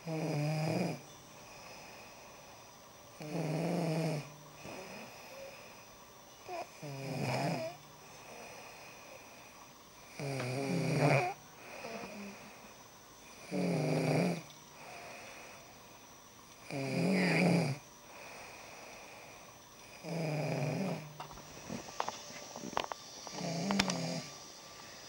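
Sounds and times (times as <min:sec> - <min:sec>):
woman snoring: 0:00.0 - 0:02.2, 0:03.2 - 0:09.5, 0:10.1 - 0:15.6, 0:16.6 - 0:24.3
faint breath: 0:04.6 - 0:06.1, 0:08.0 - 0:09.7, 0:11.2 - 0:13.4, 0:14.7 - 0:16.1, 0:18.0 - 0:20.1, 0:21.1 - 0:25.0.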